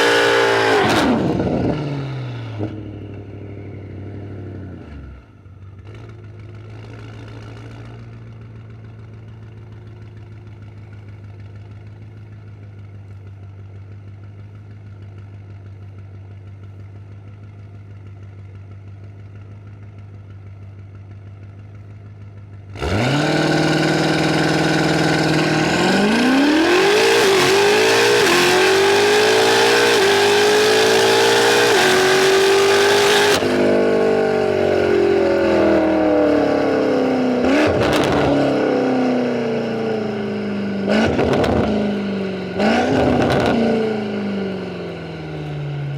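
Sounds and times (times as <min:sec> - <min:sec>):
car accelerating through gearshifts: 0:00.0 - 0:02.8, 0:22.8 - 0:45.0
car engine idling: 0:05.3 - 0:45.9.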